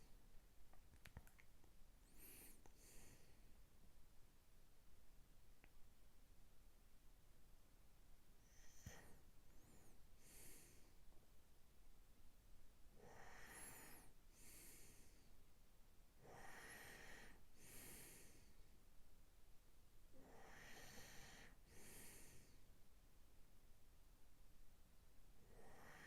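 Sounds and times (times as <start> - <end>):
man breathing in sleep: 2.1 - 3.4, 8.5 - 11.0, 13.0 - 15.3, 16.2 - 18.6, 20.2 - 22.6, 25.5 - 26.0.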